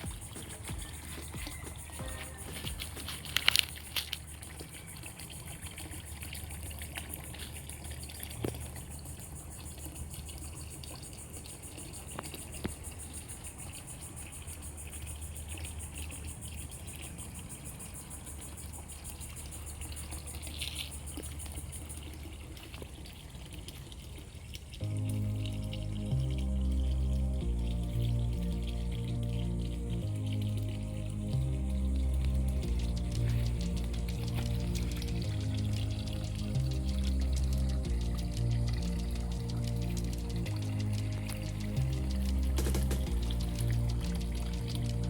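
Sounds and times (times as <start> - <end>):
faint ticks: 0.0 - 23.0, 24.5 - 45.0
fountain water trickling and splashing: 0.0 - 45.0
low hum: 24.8 - 45.0.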